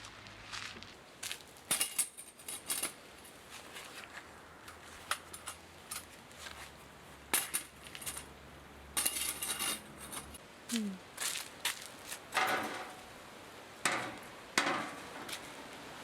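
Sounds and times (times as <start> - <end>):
utensils clinking on cookware: 9.0 - 10.4, 12.4 - 13.0.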